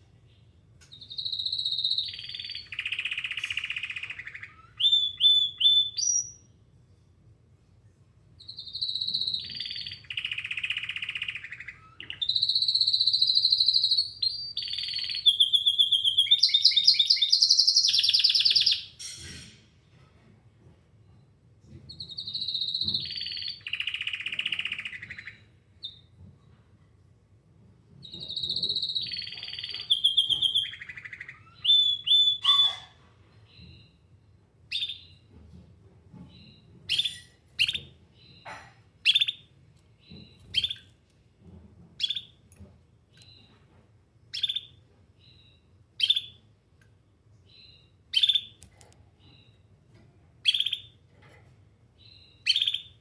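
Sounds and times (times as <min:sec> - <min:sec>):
canary trilled song: 0:00.8 - 0:06.6, 0:08.4 - 0:19.6, 0:21.9 - 0:26.1, 0:28.0 - 0:32.9, 0:34.7 - 0:35.3, 0:36.3 - 0:41.0, 0:42.0 - 0:43.6, 0:44.3 - 0:46.5, 0:47.5 - 0:49.6, 0:50.4 - 0:51.0, 0:52.0 - 0:53.0
canary short high chirps: 0:28.3 - 0:32.9.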